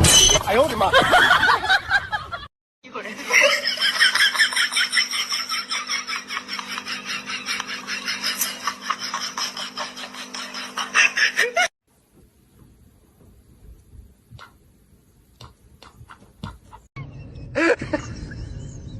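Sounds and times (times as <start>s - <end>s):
high-pitched rapid laughter: 3.3s - 11.7s.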